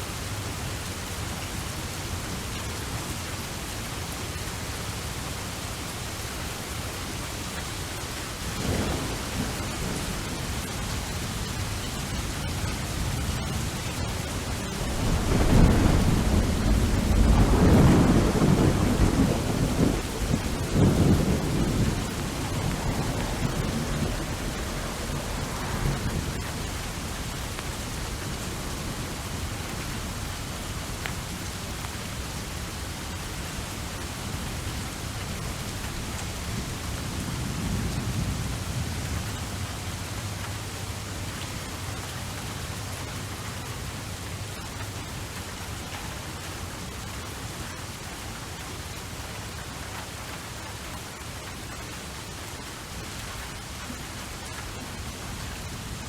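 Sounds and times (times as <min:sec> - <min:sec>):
heavy rain hissing: 0:00.0 - 0:56.0
low rolling thunder: 0:07.9 - 0:32.7, 0:33.3 - 0:40.7.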